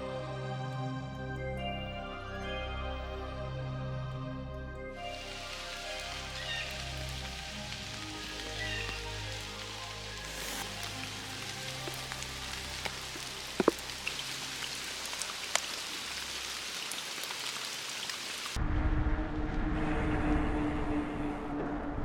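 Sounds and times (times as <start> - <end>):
soft background music: 0.0 - 15.3
rain hissing: 5.0 - 18.6
water drips ticking: 5.1 - 18.6
wind rumbling on microphone: 18.6 - 22.0.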